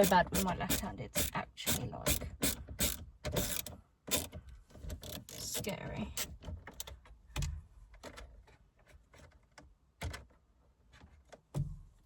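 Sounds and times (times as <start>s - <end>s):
screwdriver clicking on plastic trim: 0.0s - 4.3s.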